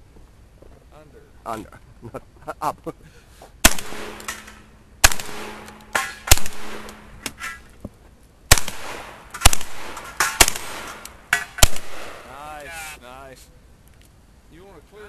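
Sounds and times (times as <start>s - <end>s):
shotgun blasts with echo: 3.6s - 7.5s, 8.5s - 12.4s.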